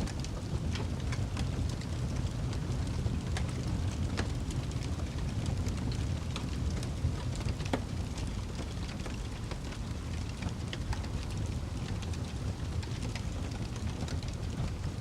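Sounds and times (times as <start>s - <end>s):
fire crackling and popping: 0.0s - 15.0s
low steady rumble: 0.0s - 15.0s.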